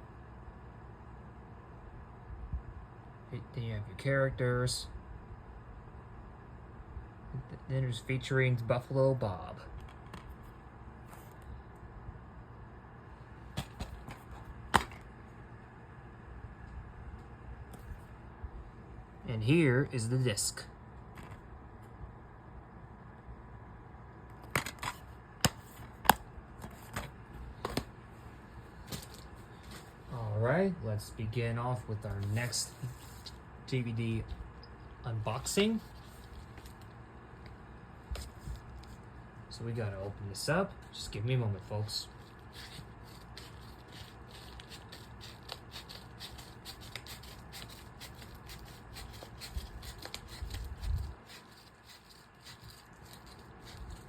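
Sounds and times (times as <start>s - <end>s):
fingers scratching plastic wrapping: 42.1s - 54.0s.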